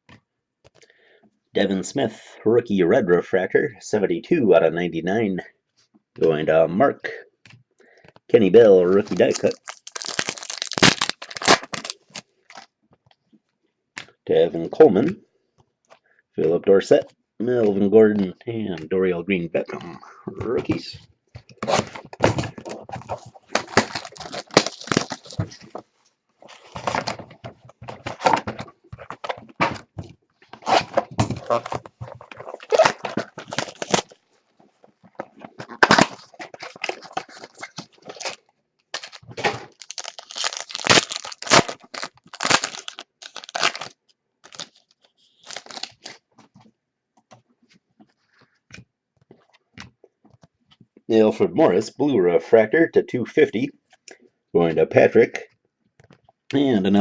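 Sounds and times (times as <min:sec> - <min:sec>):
wrappers crinkling: 0:08.8 - 0:12.7, 0:21.6 - 0:25.7, 0:30.6 - 0:34.2, 0:35.7 - 0:46.2
card packs tearing open: 0:08.9 - 0:12.7, 0:21.6 - 0:25.7, 0:30.5 - 0:34.2, 0:35.6 - 0:46.2.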